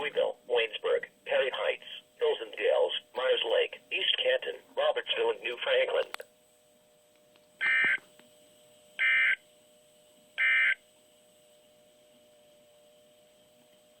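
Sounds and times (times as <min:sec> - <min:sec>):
harsh electronic data tone bursts: 0:07.6 - 0:08.0, 0:09.0 - 0:09.4, 0:10.4 - 0:10.8.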